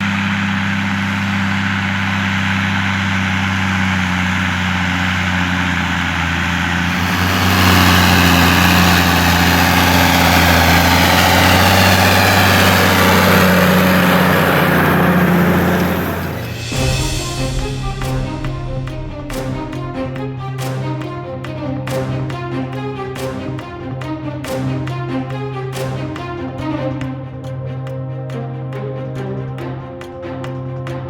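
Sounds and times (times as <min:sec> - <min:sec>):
tractor diesel engine running: 0:00.0 - 0:27.1
broad hiss: 0:06.9 - 0:21.1.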